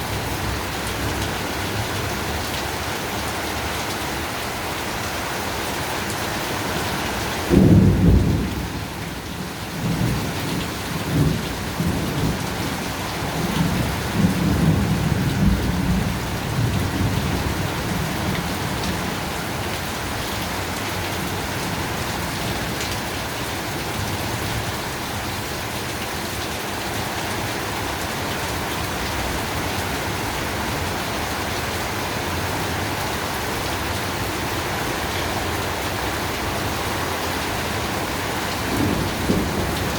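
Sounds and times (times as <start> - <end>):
heavy rain pouring: 0.0 - 39.9
rolling thunder: 7.4 - 19.1, 38.5 - 39.9
thunderclap: 38.7 - 39.9.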